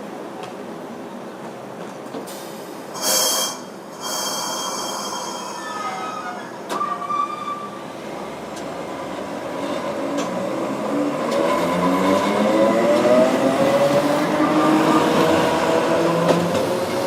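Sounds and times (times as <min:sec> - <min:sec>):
streetcar running on rails: 0:00.0 - 0:17.0
steel wheels squealing: 0:03.0 - 0:07.9.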